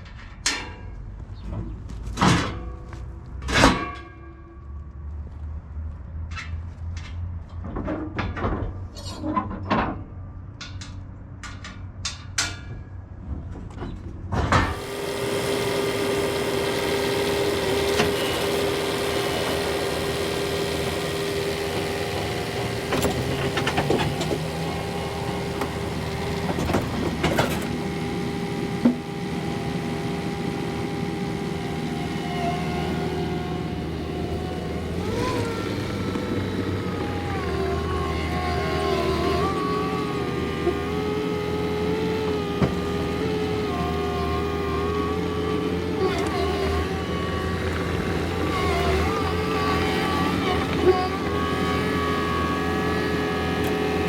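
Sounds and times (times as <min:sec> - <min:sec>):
skid steer machine running: 0:13.2 - 0:54.0.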